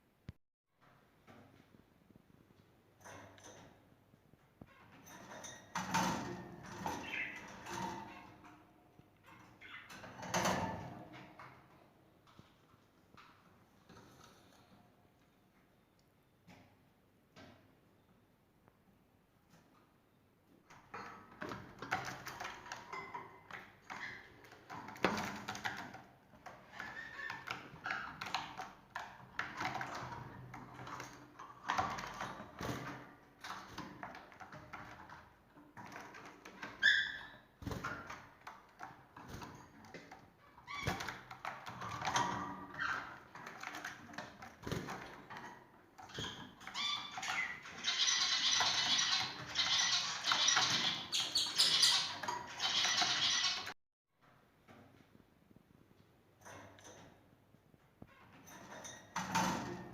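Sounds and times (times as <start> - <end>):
cage birds chirping: 4.7 - 8.6, 9.2 - 11.0, 46.0 - 53.8.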